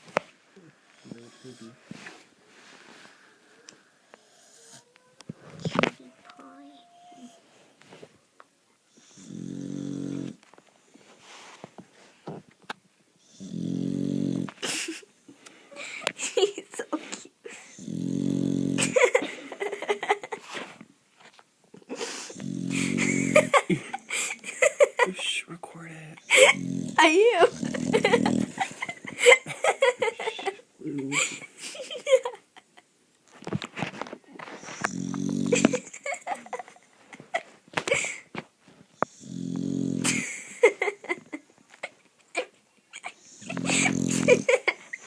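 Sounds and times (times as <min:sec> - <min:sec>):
dog snoring: 0:00.9 - 0:01.8, 0:08.9 - 0:10.4, 0:13.2 - 0:14.6, 0:17.7 - 0:19.0, 0:22.3 - 0:23.5, 0:26.2 - 0:28.7, 0:34.4 - 0:35.9, 0:39.0 - 0:40.2, 0:43.2 - 0:44.5
soft breath noises and clicks: 0:01.8 - 0:04.3.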